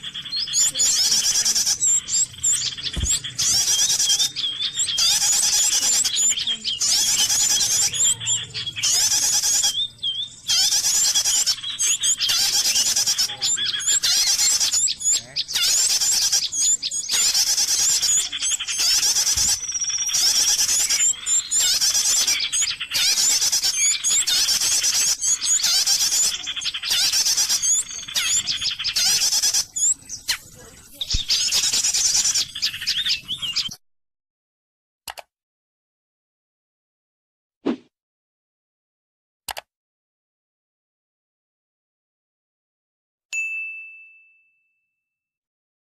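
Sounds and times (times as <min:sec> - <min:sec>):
recorded bird chirping and trilling: 0:00.0 - 0:33.8.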